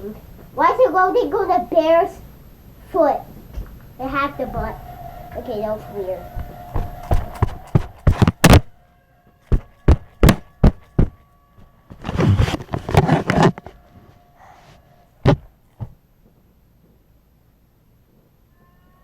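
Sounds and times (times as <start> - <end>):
clattering: 3.4 - 8.7, 11.9 - 13.8
sharp knocks close to microphone: 6.4 - 8.7, 9.5 - 11.2, 15.2 - 16.0.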